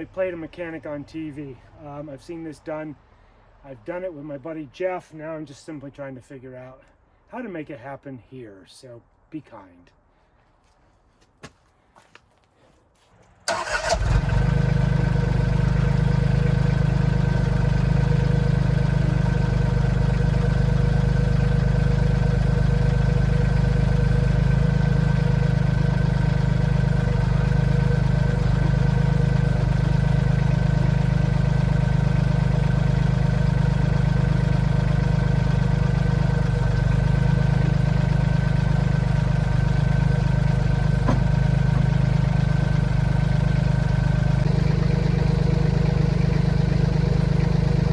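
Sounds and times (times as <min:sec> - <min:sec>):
large engine idling: 0:13.5 - 0:47.9.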